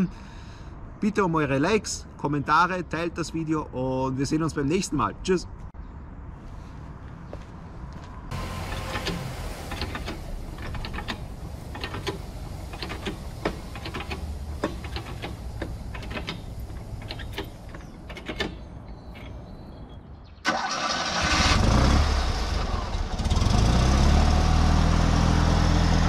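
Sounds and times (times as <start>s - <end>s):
low background rumble: 8.3s - 20.3s
small mechanical clicks and rattles: 8.7s - 18.6s.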